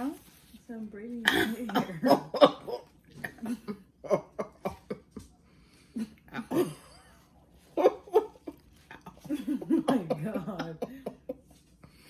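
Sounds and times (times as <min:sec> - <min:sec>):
person coughing: 0:01.2 - 0:04.3, 0:09.5 - 0:10.7.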